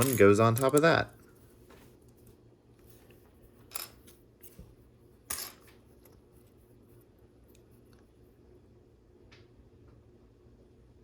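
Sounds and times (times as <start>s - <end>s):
plastic bricks clicking: 0.0s - 1.0s
faint steady hum: 0.0s - 11.0s.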